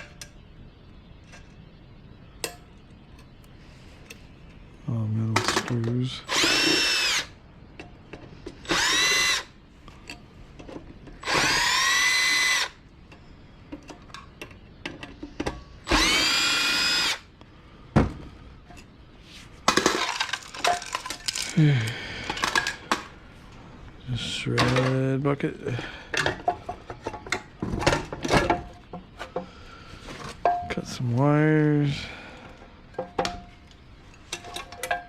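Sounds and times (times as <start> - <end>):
power drill spinning up: 6.3 - 7.4, 8.6 - 9.6, 11.2 - 12.8, 15.8 - 17.3
small parts clicking and clattering: 19.7 - 23.1.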